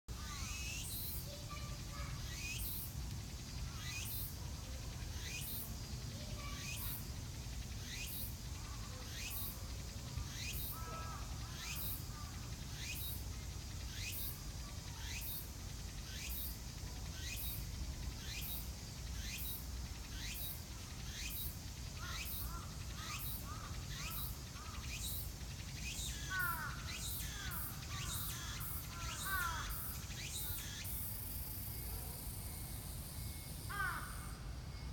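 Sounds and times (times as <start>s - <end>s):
cicada singing: 0.1s - 34.9s
bird calling: 25.9s - 31.0s, 33.7s - 34.4s.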